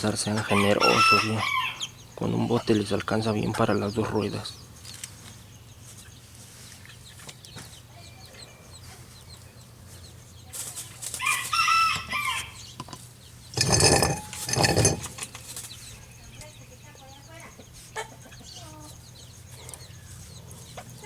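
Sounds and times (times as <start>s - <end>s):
rooster crowing: 0.4s - 1.9s, 11.2s - 12.6s.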